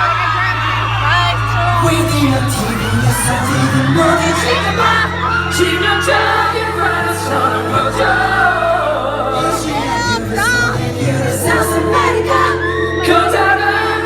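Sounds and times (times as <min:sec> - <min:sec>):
audience cheering: 0:00.0 - 0:08.8
live pop music with male vocals: 0:01.5 - 0:14.0.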